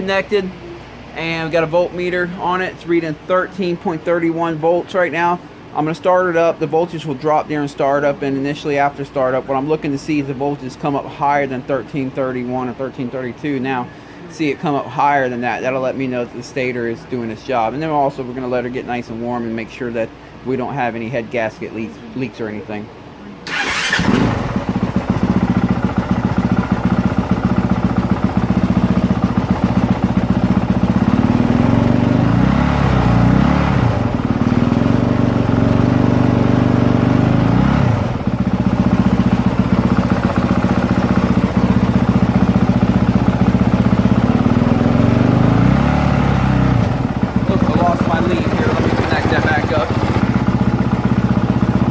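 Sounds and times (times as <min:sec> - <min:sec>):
motorcycle engine idling: 0:23.5 - 0:32.6, 0:33.2 - 0:51.9.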